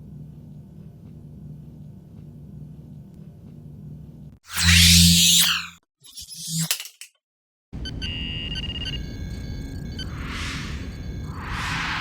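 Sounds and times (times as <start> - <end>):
electronic sci-fi sweeps: 9.9 - 12.0.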